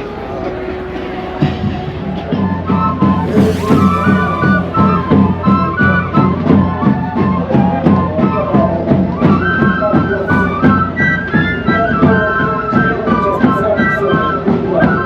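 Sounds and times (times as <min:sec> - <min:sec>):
flute-like melody: 0:00.0 - 0:15.0
steady beat: 0:02.7 - 0:07.3.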